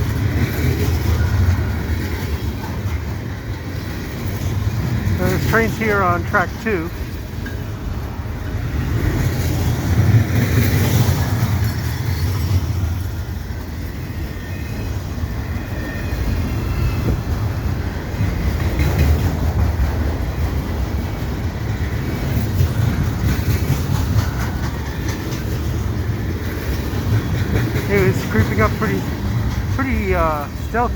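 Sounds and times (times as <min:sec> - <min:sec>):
freight train wheels clattering: 0:00.0 - 0:05.9, 0:06.9 - 0:15.0, 0:16.1 - 0:30.7.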